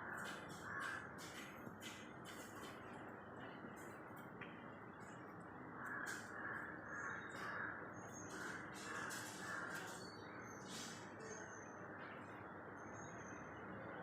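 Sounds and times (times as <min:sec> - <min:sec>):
steady background noise: 0:00.0 - 0:14.0
bird harsh calls: 0:05.8 - 0:11.4.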